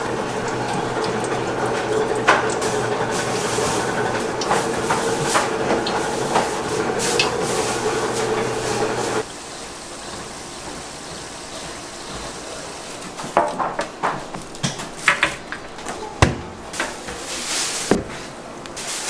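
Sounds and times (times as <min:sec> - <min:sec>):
utensils knocking and clattering: 0:00.0 - 0:09.2, 0:10.1 - 0:16.0
kitchen background noise: 0:00.0 - 0:19.0.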